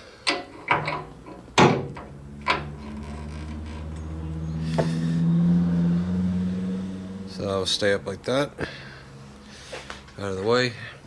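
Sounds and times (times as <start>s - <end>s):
metal clanks and knocks: 0.2s - 4.0s.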